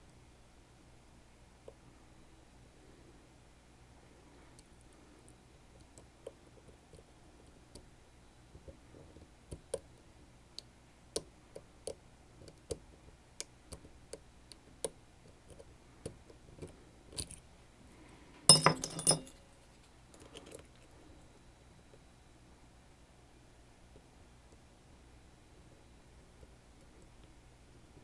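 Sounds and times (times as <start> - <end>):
metallic clinking: 18.5 - 19.6.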